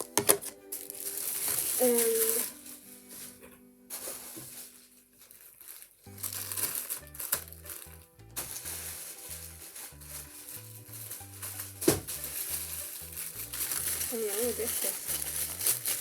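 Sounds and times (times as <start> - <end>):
plastic packaging crinkling: 0.0 - 16.0
background music with bass line: 6.1 - 16.0.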